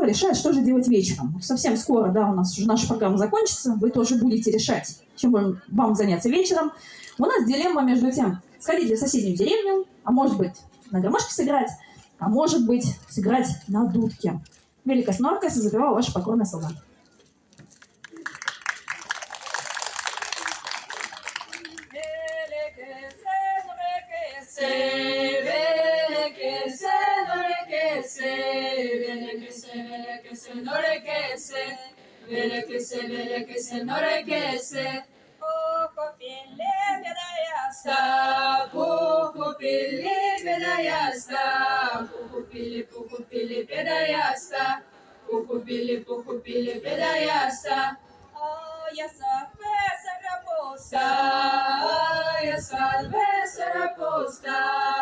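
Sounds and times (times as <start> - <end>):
female choir singing: 21.9 - 55.0.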